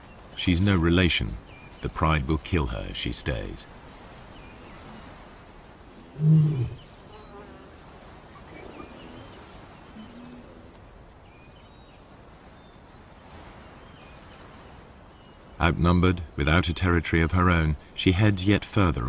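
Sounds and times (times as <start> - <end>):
lion growl: 6.1 - 7.8.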